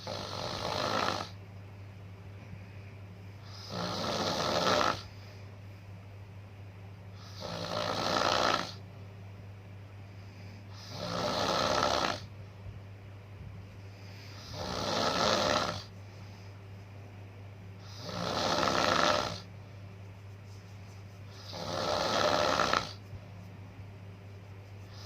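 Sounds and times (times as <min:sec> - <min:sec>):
rasping snores: 0:00.0 - 0:01.4, 0:03.5 - 0:05.1, 0:07.2 - 0:08.8, 0:10.7 - 0:12.3, 0:14.3 - 0:15.9, 0:17.8 - 0:19.5, 0:21.4 - 0:23.0
steady low hum: 0:00.0 - 0:25.0.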